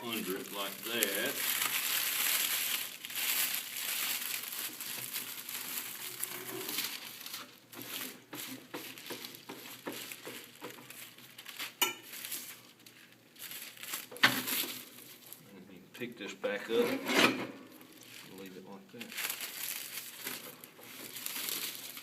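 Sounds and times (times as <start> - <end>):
plastic film crinkling: 0.0 - 15.5, 17.7 - 22.0.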